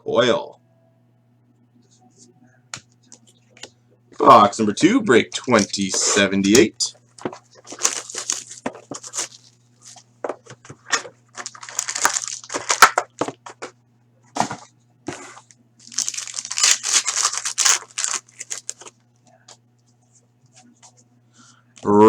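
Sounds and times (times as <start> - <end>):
plastic wrapping crinkling: 5.4 - 13.7, 15.1 - 19.0.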